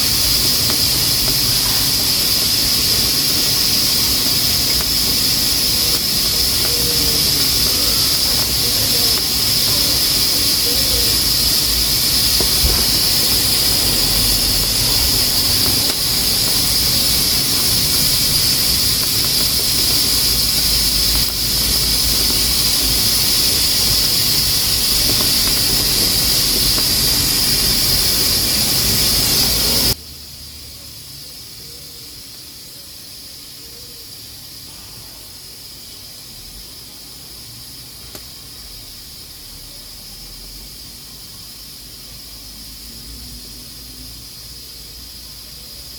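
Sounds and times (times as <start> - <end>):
pressure cooker valve hissing: 0.0 - 30.1.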